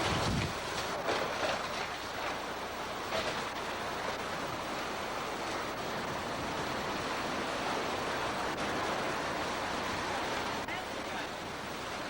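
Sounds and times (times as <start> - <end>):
strong wind on microphone: 0.0 - 0.7.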